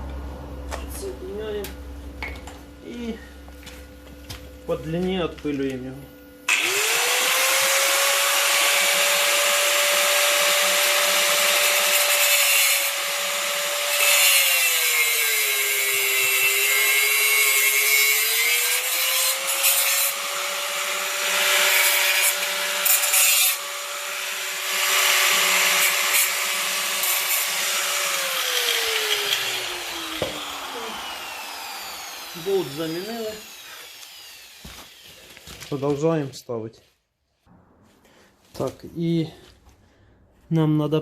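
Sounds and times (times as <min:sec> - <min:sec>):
angle grinder cutting steel: 0:06.5 - 0:35.5.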